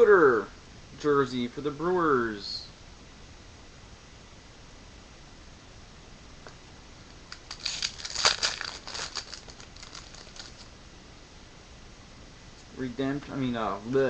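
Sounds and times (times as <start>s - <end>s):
foil wrapper crinkling and tearing: 7.3s - 10.7s.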